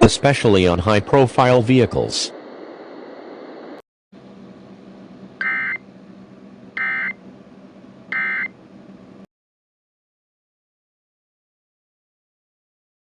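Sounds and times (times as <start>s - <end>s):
background hiss and hum: 0.0s - 9.3s
chirping digital data bursts: 5.4s - 5.8s, 6.8s - 7.2s.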